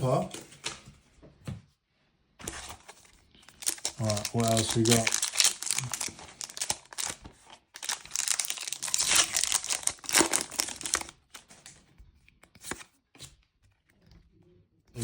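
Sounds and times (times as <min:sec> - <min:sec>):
foil wrapper crinkling and tearing: 0:02.4 - 0:11.7
cards rustling and ticking: 0:02.4 - 0:14.1.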